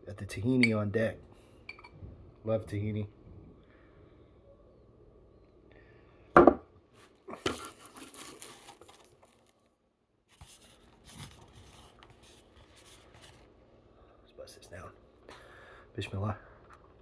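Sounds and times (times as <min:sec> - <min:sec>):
wrapping crinkling and tearing: 0:07.0 - 0:09.7, 0:10.3 - 0:13.5
soft rustling: 0:10.3 - 0:13.5.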